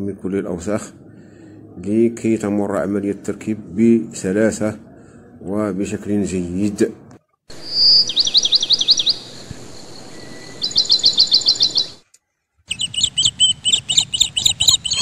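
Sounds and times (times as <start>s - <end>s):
bird chirping rapidly: 7.5s - 12.0s, 12.7s - 15.0s.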